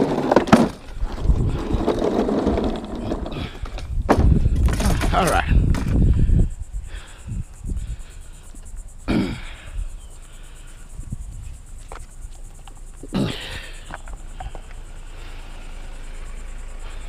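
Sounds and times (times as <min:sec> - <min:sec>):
clunks of scrap handled: 0:00.0 - 0:06.0
insects chirring: 0:00.0 - 0:17.0.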